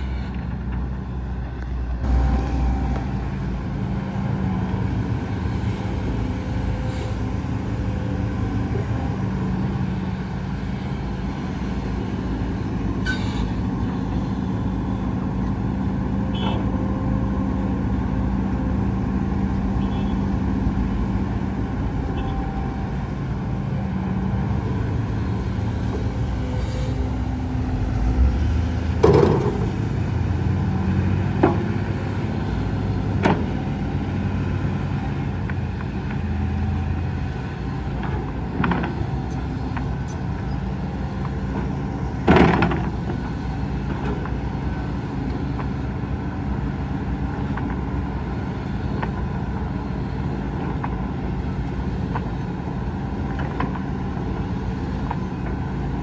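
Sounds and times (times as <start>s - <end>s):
diesel machinery engine drone: 0.0s - 56.0s
sharp knocks and clunks: 28.9s - 30.0s, 33.0s - 33.6s.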